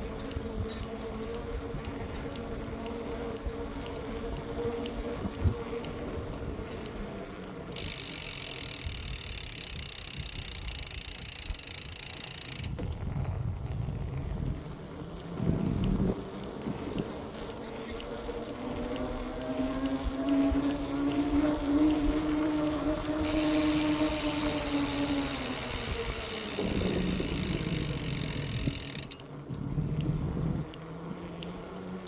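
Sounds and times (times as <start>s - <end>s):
bicycle wheel ticking: 0.0s - 32.0s
electric motor whine: 4.0s - 12.8s, 18.5s - 29.2s.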